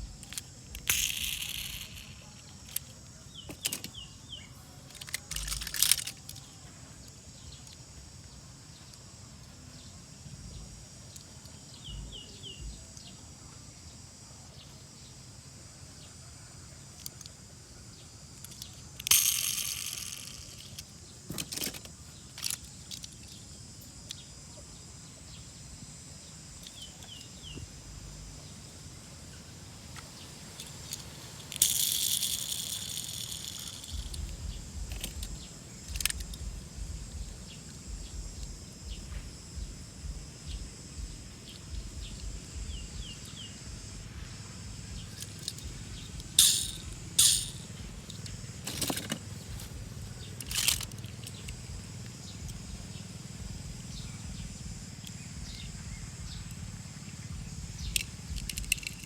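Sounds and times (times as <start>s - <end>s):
light clicks and rattles: 0.0s - 7.8s, 18.4s - 23.4s, 29.9s - 39.3s, 44.9s - 53.0s, 57.8s - 59.0s.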